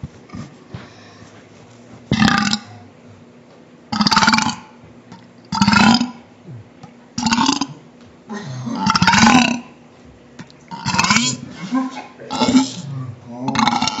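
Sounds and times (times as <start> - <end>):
child burping: 7.3 - 9.7, 11.0 - 14.0.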